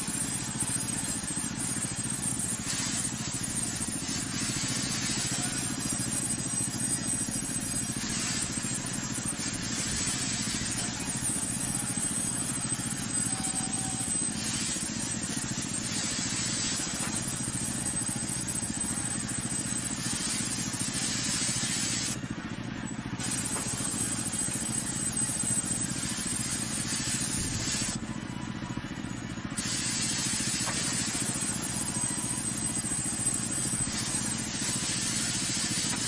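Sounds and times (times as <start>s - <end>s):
sawmill motor drumming: 0.0s - 36.0s
saw blade hissing through log: 7.8s - 10.8s.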